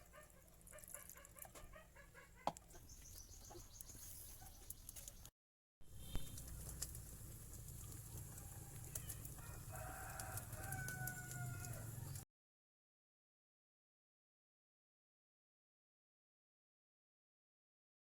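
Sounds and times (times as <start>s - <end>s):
chicken crowing: 8.3s - 12.1s.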